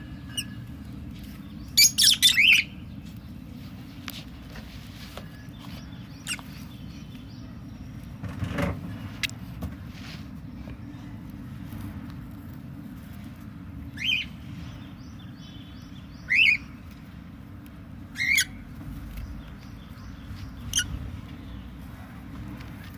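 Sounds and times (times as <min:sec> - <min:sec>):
bird chick chirping: 0:00.0 - 0:03.2, 0:05.1 - 0:09.4, 0:13.9 - 0:17.0, 0:18.1 - 0:21.8
steady low rumble: 0:00.0 - 0:22.9.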